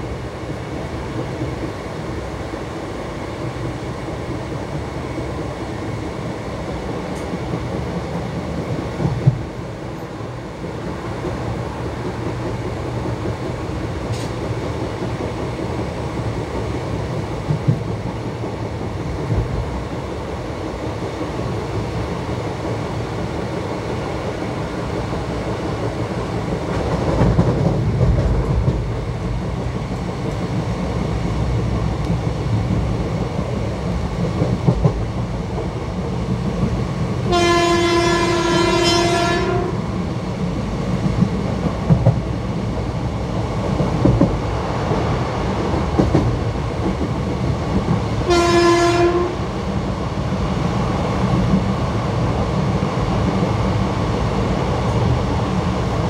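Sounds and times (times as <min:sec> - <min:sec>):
train coaches rumbling on track: 0:00.0 - 0:56.0
electric locomotive horn: 0:37.3 - 0:39.8, 0:48.2 - 0:49.4.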